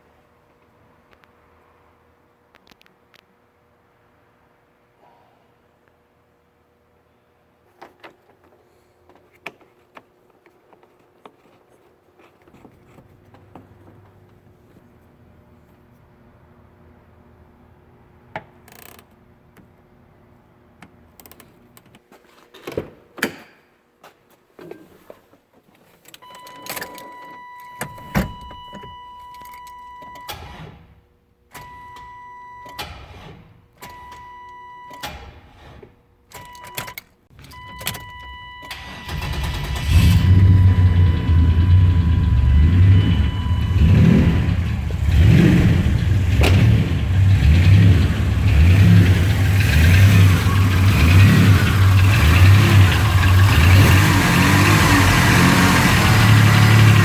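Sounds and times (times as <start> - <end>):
truck engine running loudly: 39.9 - 57.0.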